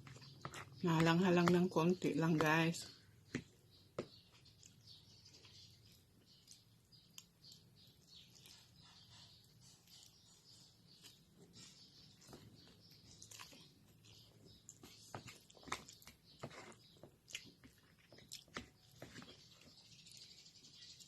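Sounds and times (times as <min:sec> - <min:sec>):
person chewing noodles: 0:04.3 - 0:20.2.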